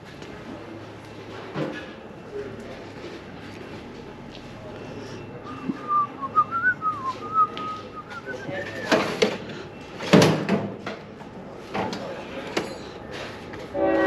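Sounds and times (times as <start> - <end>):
person whistling a tune: 5.5 - 9.0.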